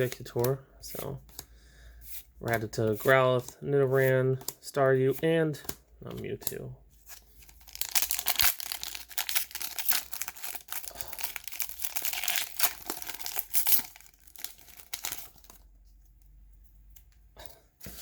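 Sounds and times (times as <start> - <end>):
foil wrapper crinkling and tearing: 7.2 - 15.7.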